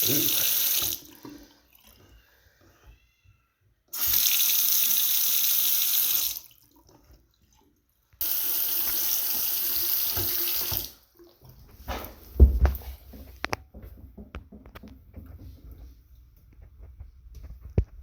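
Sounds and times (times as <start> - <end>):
faucet running into sink: 0.0 - 2.3, 3.9 - 7.2, 8.2 - 11.5.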